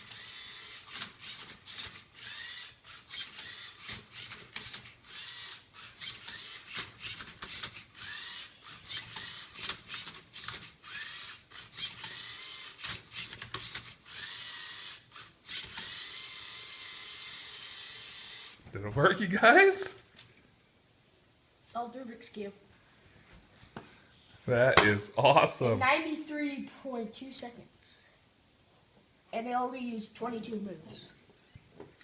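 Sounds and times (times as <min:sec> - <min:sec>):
robot motors whirring: 0:00.0 - 0:18.6.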